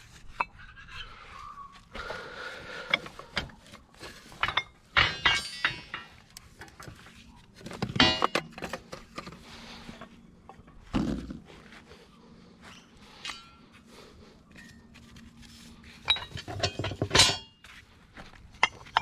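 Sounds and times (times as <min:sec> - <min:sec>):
scrap metal clinks and knocks: 0:02.8 - 0:10.8, 0:12.8 - 0:13.9, 0:14.5 - 0:17.7, 0:18.4 - 0:19.0
ringing metal clangs: 0:04.2 - 0:06.4, 0:07.9 - 0:08.8, 0:13.2 - 0:13.8, 0:16.0 - 0:17.6.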